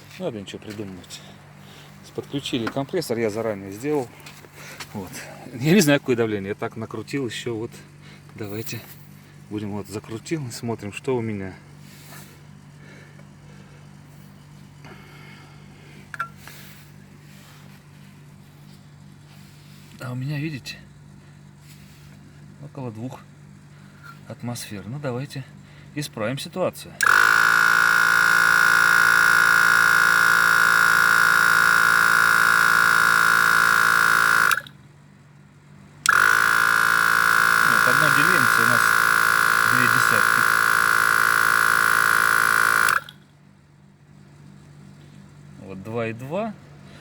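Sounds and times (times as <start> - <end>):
steady low hum: 0.0 - 47.0
tyre compressor buzzing drone: 27.0 - 34.8, 35.9 - 43.2
air hissing from tyre valve: 36.1 - 43.1.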